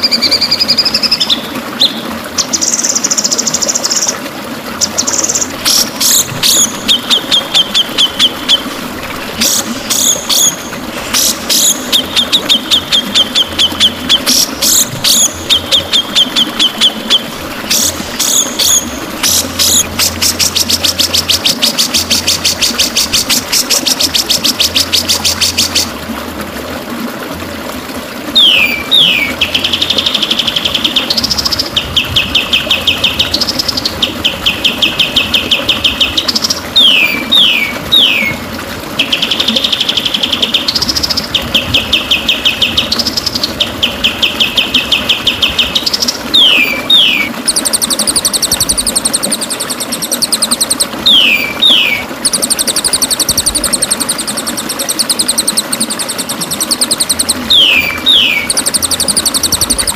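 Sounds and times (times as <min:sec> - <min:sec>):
bird whistles and trills: 0:00.0 - 0:04.2, 0:04.8 - 0:25.9, 0:28.4 - 0:38.4, 0:39.0 - 0:59.9
higher faster bird trill: 0:05.0 - 0:25.9, 0:41.9 - 0:59.9.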